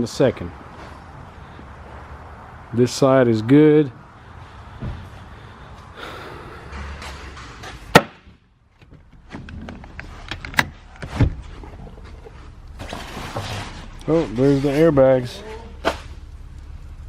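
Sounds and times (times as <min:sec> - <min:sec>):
handling rustling and clatter: 0:08.7 - 0:16.3.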